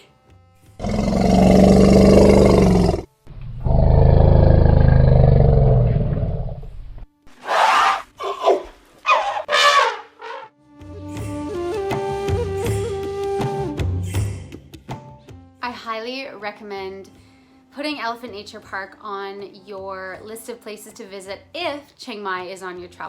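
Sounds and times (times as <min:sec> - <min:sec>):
elephants roaring: 0:00.8 - 0:06.7, 0:07.4 - 0:10.5.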